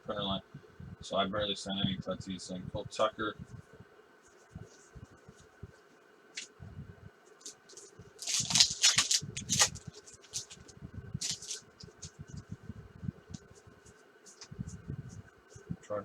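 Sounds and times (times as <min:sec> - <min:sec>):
trading cards rustling and clicking: 0:07.3 - 0:12.5.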